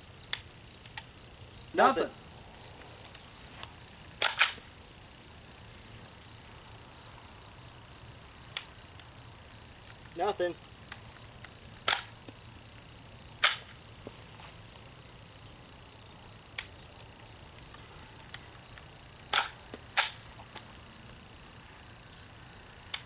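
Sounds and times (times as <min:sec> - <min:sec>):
insects droning: 0:00.0 - 0:23.0
metallic clicks of gun action: 0:04.2 - 0:04.6, 0:11.8 - 0:12.4, 0:13.4 - 0:13.8, 0:18.4 - 0:20.3.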